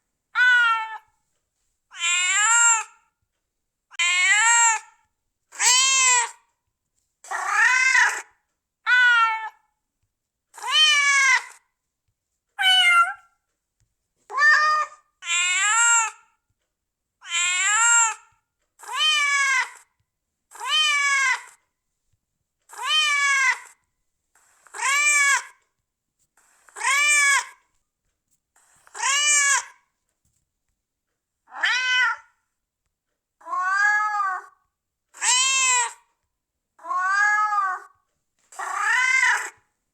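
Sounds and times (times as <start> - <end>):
cat meowing: 0.4 - 1.1, 1.9 - 3.0, 4.0 - 4.9, 5.6 - 6.4, 7.3 - 8.3, 8.9 - 9.6, 10.6 - 11.6, 12.6 - 13.3, 14.3 - 16.2, 17.2 - 18.2, 18.8 - 19.9, 20.5 - 21.6, 22.7 - 23.8, 31.5 - 32.4, 33.4 - 34.6, 35.2 - 36.0, 36.8 - 38.0, 38.6 - 39.6.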